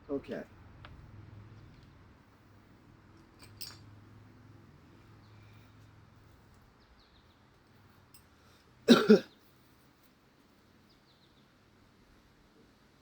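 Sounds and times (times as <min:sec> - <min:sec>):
man coughing: 0:08.9 - 0:09.3.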